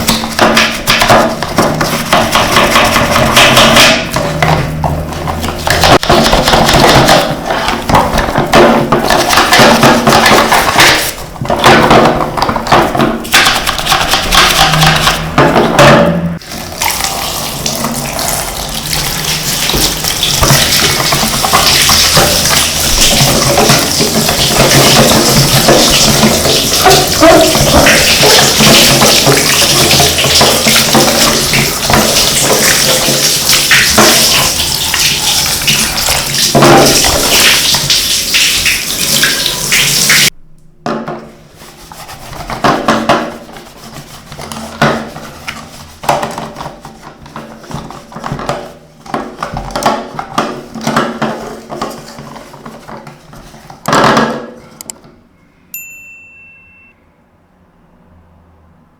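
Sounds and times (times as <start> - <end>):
water spraying: 0.0 - 11.4, 16.4 - 40.3
rubbing and handling sounds: 0.0 - 40.4, 41.1 - 54.9
short high beep: 55.5 - 57.0.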